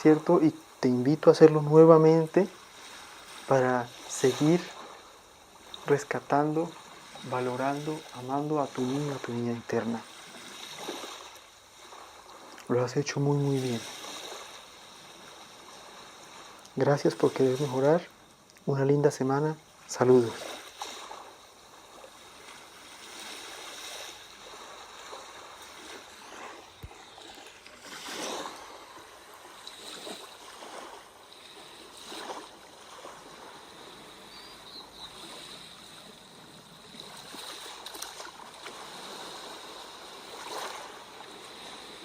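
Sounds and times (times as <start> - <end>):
sea waves washing in: 0.0 - 42.0.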